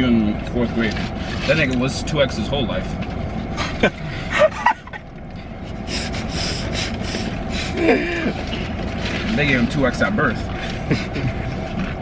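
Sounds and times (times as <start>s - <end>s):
low background hum: 0.0s - 12.0s
group laughing: 3.6s - 5.1s, 7.5s - 8.5s.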